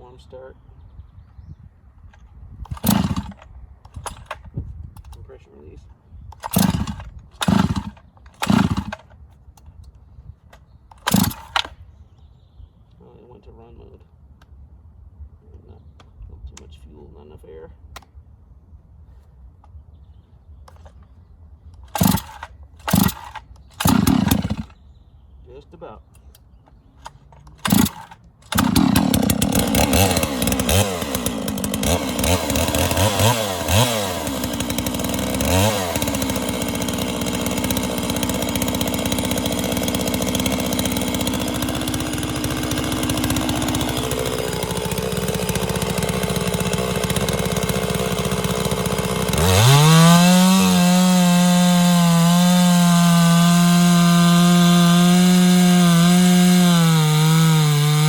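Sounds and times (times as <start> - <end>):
chainsaw engine revving: 2.7 - 4.4, 6.4 - 9.1, 11.0 - 11.8, 21.8 - 24.8, 27.4 - 58.0.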